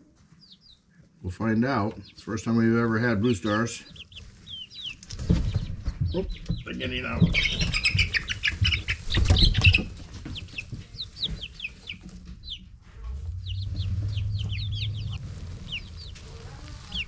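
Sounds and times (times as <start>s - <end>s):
chicks peeping: 0.0s - 17.0s
rustling flutter: 9.0s - 17.0s
low rumble: 12.4s - 17.0s.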